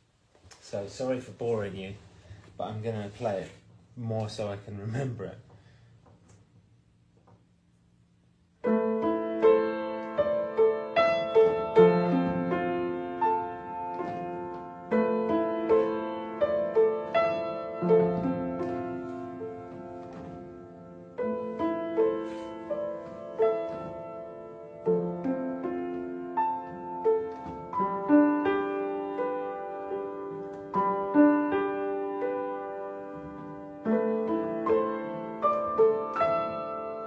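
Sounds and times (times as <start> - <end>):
slow solo piano piece: 8.6 - 37.0.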